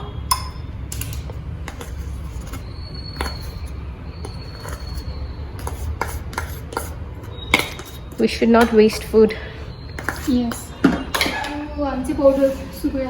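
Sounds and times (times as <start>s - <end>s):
spoon tapping bowl: 0.0s - 0.7s
spoon stirring dry ingredients: 0.3s - 10.8s.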